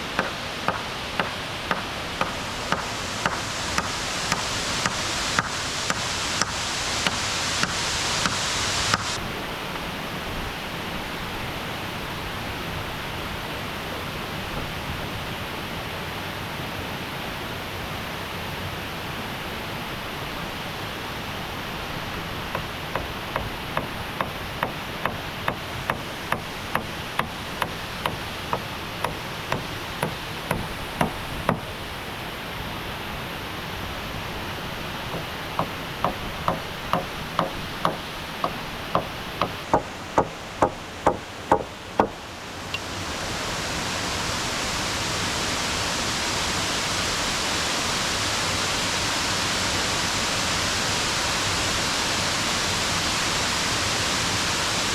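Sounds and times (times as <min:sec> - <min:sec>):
waterfall rushing: 0:00.0 - 0:54.9
hand tool striking wood: 0:00.2 - 0:09.1, 0:22.5 - 0:31.7, 0:35.1 - 0:42.2.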